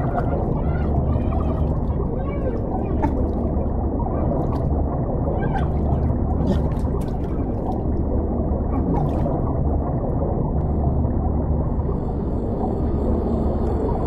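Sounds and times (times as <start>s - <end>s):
short wavering moans: 0.0s - 4.4s
deep underwater rumble: 0.0s - 14.0s
gurgling bubbles: 0.0s - 14.0s.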